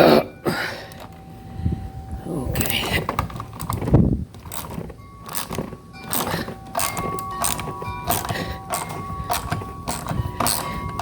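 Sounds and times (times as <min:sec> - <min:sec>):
faint steady whine: 0:00.0 - 0:11.0.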